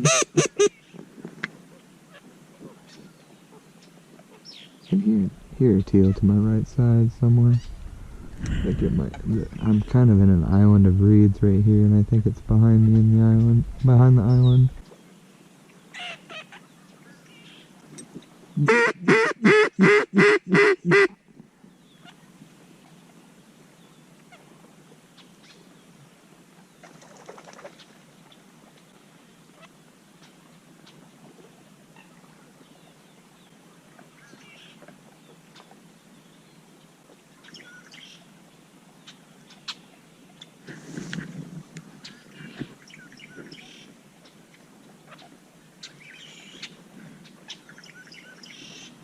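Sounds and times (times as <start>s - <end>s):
duck call quacks: 0.0s - 0.8s, 18.6s - 21.2s
faint bird chirps: 37.4s - 38.3s, 45.0s - 49.0s.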